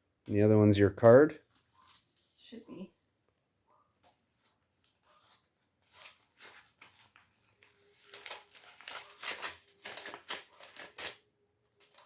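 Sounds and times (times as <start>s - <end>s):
paper envelope tearing: 5.9s - 12.0s.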